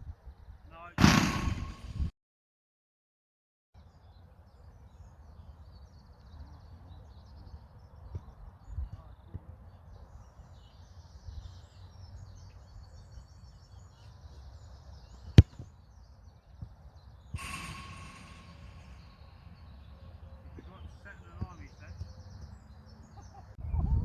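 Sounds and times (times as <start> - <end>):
faint birdsong: 3.8 - 24.0
football kicked: 15.4 - 15.7
low wind rumble: 23.6 - 24.0.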